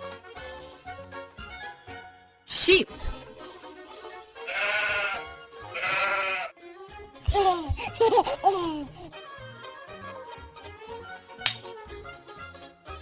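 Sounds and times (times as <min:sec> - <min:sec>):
light background music: 0:00.0 - 0:13.0
sheep bleating: 0:04.4 - 0:06.5.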